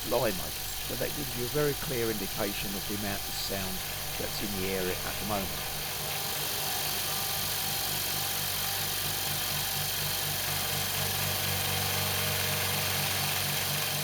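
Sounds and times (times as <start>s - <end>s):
air compressor running: 0.0s - 14.0s.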